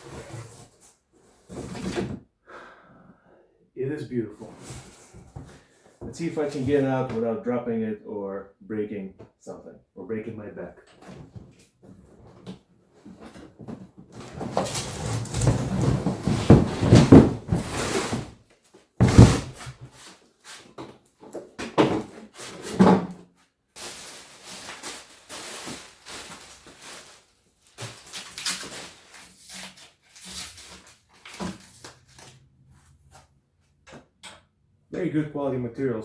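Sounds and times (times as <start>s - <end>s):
cardboard box scraping and rustling: 14.2s - 18.4s.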